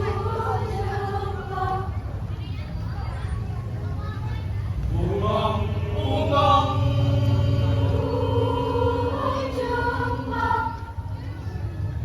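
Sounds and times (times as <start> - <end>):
choir singing sustained notes: 0.0 - 2.0, 4.9 - 11.2.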